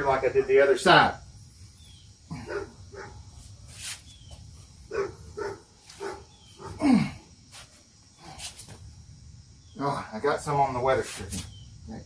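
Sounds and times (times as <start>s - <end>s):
man grunting with effort: 6.7s - 7.3s.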